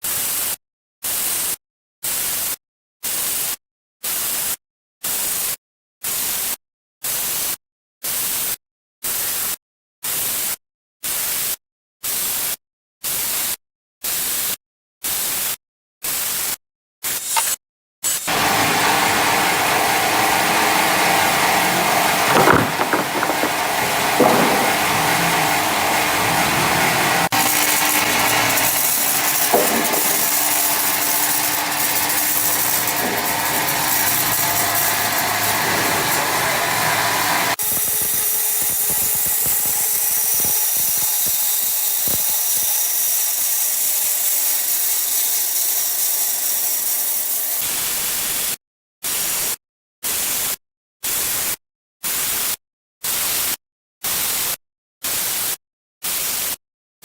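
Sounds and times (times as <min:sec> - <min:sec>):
saw scraping: 0:17.2 - 0:47.6
sawmill saw cutting log: 0:18.2 - 0:47.7.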